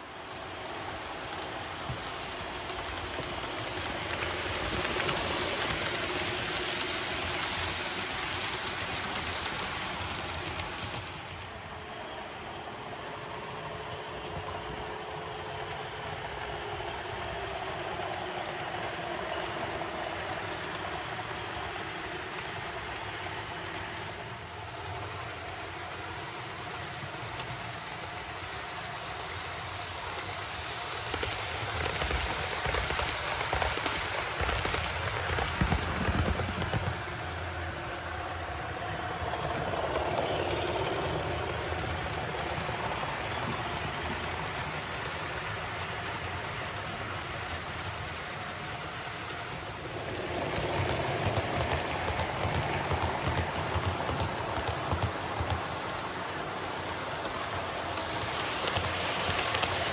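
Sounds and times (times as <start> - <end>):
model train wheels rumbling: 0.0 - 59.9.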